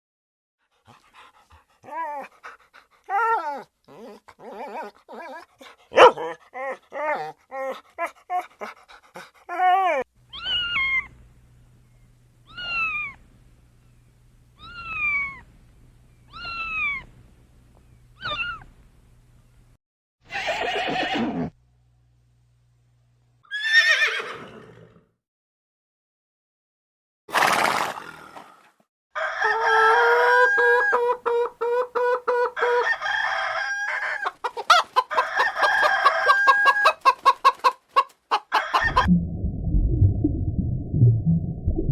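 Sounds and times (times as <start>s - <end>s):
rough animal calls: 0.9s - 11.1s, 38.5s - 39.1s
animal yelping calls: 1.8s - 11.1s, 12.5s - 13.2s, 14.6s - 15.4s, 16.3s - 17.0s, 18.2s - 18.6s, 20.3s - 21.5s, 38.5s - 39.1s.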